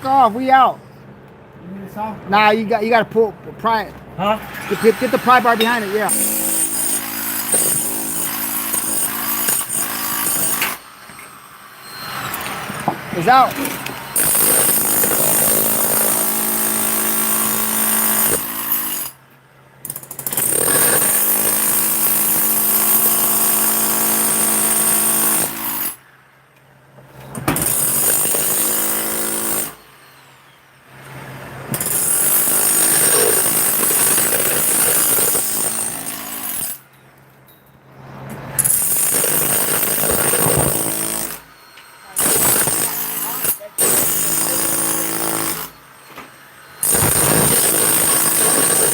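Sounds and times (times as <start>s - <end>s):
demolition hammer bursts: 5.2s - 11.2s, 12.0s - 19.2s, 19.8s - 26.0s, 27.4s - 30.0s, 31.7s - 36.8s, 38.6s - 41.6s, 42.2s - 46.0s, 46.8s - 48.9s.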